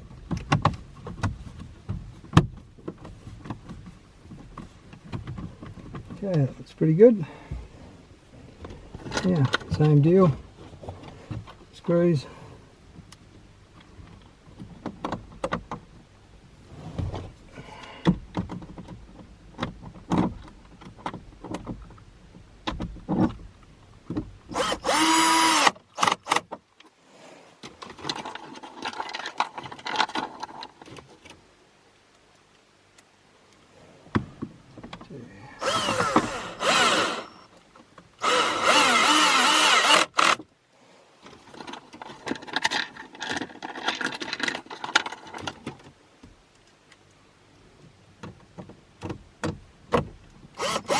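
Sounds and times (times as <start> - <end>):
cordless drill driving screws: 24.5 - 26.4, 35.6 - 37.5, 38.2 - 40.4, 50.6 - 50.9
screws and plastic parts rattling: 27.6 - 31.2, 35.6 - 37.4, 38.2 - 40.5, 41.2 - 45.9, 50.6 - 50.9.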